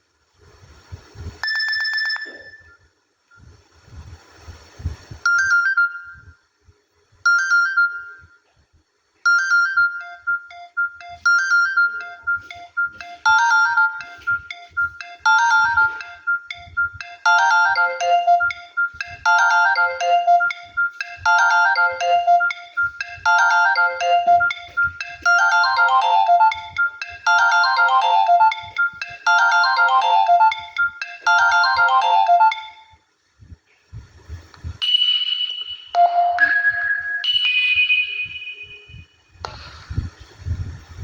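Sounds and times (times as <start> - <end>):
electronic ringtone melody: 1.4 - 2.8, 9.3 - 33.0, 34.8 - 39.0.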